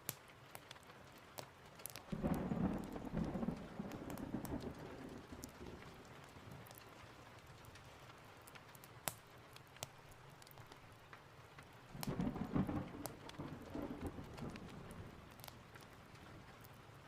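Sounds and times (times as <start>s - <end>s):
steady rain: 0.0s - 17.0s
low thunder rumble: 2.1s - 6.7s, 12.0s - 15.5s.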